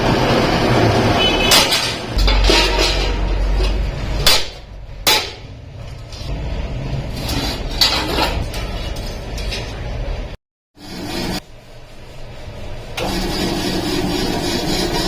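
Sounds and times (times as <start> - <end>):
metal clanking: 1.5 - 6.1.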